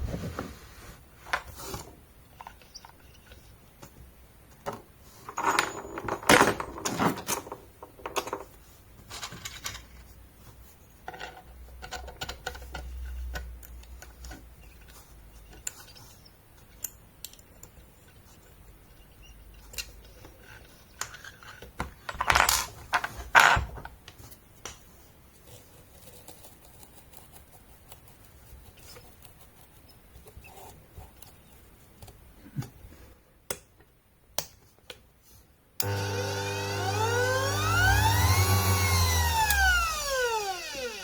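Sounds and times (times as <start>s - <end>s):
handling clicks and knocks: 2.4s - 10.1s
bench grinder motor whining: 35.8s - 41.0s.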